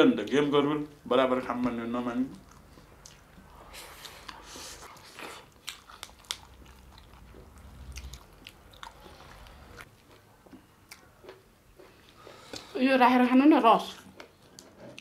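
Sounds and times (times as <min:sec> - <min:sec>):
chewing and mouth smacks: 0:02.3 - 0:11.5.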